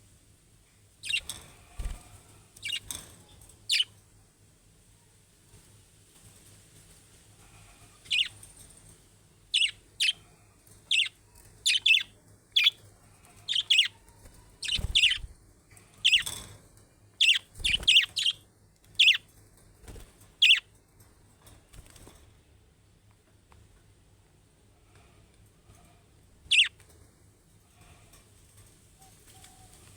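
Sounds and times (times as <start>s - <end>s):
budgerigars chirping: 1.0s - 1.2s, 2.6s - 2.9s, 8.1s - 8.3s, 9.6s - 10.2s, 10.9s - 11.1s, 11.7s - 12.8s, 13.5s - 14.0s, 14.6s - 15.3s, 16.0s - 16.3s, 17.2s - 18.4s, 19.0s - 19.2s, 26.5s - 26.7s.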